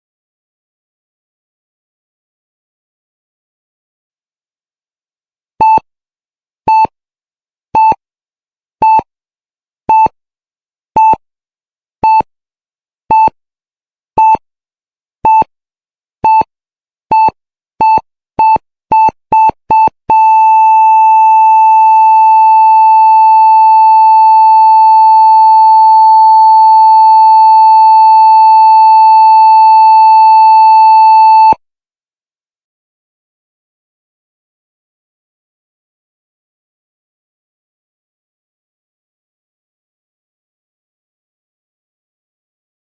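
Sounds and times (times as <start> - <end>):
heart monitor beeping: 17.1 - 31.6
heart monitor flatline tone: 17.1 - 31.6.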